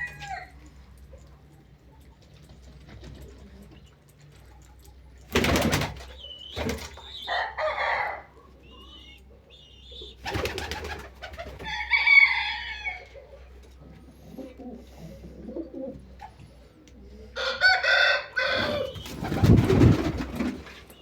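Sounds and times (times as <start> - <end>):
domestic birds calling: 3.4 - 11.8, 12.8 - 19.8
noisy rustling bursts: 18.8 - 20.7.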